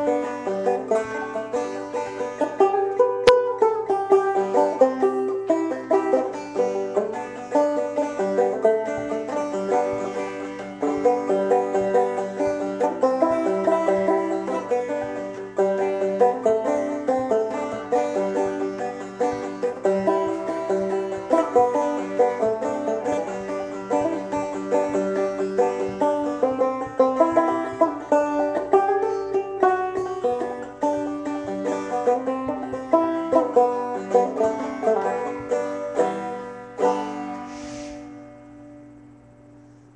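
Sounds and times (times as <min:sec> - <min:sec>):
banjo playing old-time tune: 0:00.0 - 0:39.5.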